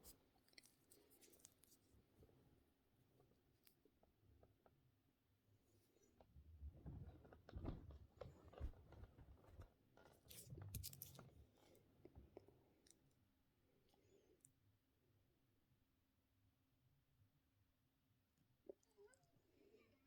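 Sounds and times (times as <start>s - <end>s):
faint clicking and rustling: 0.0s - 2.4s, 3.2s - 13.2s.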